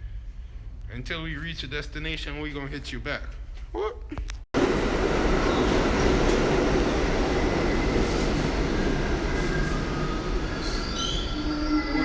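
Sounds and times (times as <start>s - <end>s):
subway train rumble and hiss: 4.6s - 12.0s
high wheel squeals: 9.3s - 12.0s.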